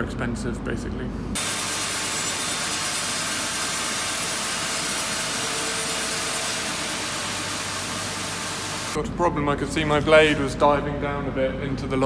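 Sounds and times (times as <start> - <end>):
band saw blade cutting log: 1.4 - 9.0
sawmill motor: 1.4 - 9.0.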